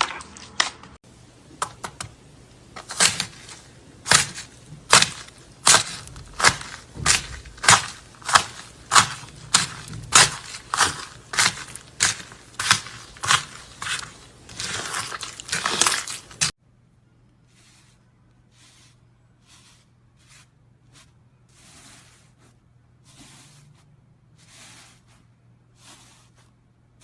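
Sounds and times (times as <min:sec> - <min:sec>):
slime crunching when squeezed: 0:02.9 - 0:16.5.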